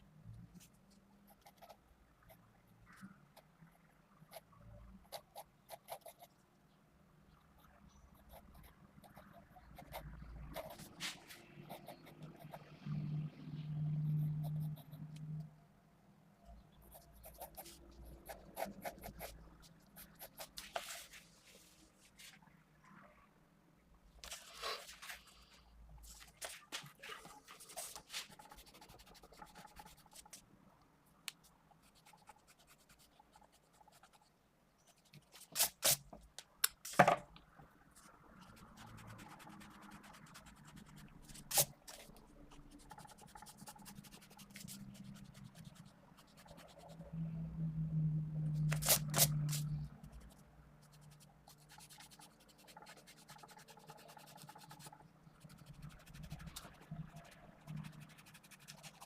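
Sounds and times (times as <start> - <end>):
pencil scratching on paper: 5.0 - 6.3, 8.2 - 12.6, 16.9 - 21.8, 26.1 - 30.4, 38.4 - 47.0, 48.7 - 59.0.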